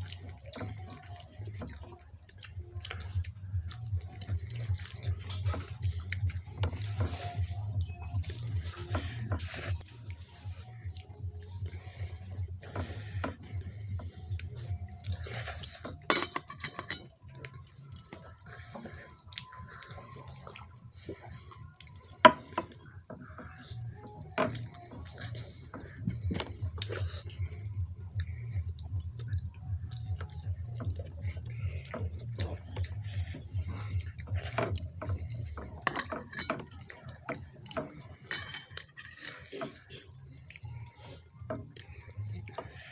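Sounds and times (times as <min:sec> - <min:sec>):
wet eating and chewing: 0:00.0 - 0:42.9.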